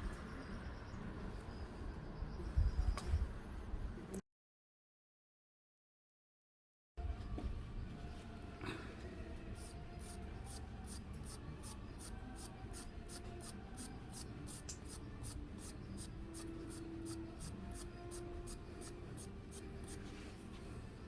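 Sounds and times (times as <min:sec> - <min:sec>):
rhythmic scraping strokes: 0:09.5 - 0:20.6.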